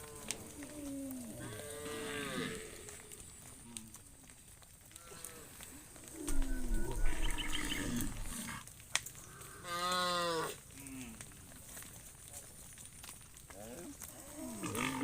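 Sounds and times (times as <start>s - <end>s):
cattle mooing: 0.0s - 3.2s, 6.3s - 8.6s, 14.4s - 15.0s.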